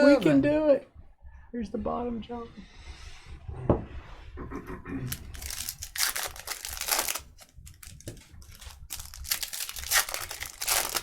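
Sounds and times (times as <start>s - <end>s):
plastic shrink wrap tearing and crinkling: 5.1s - 11.0s.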